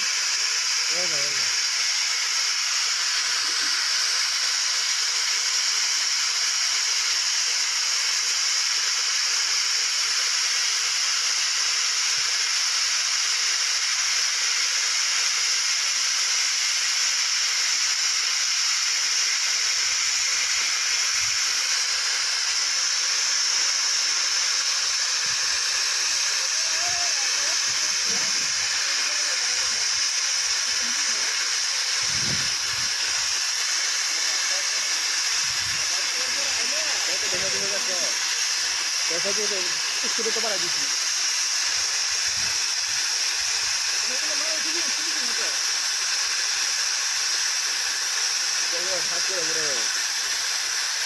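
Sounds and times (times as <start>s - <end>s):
gas cutting torch hissing: 0.0s - 51.0s.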